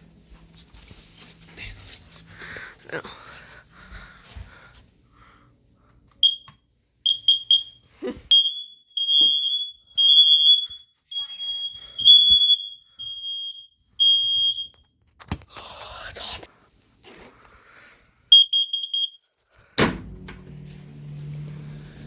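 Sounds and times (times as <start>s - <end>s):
smoke alarm beeping: 6.2s - 14.9s, 18.3s - 19.3s.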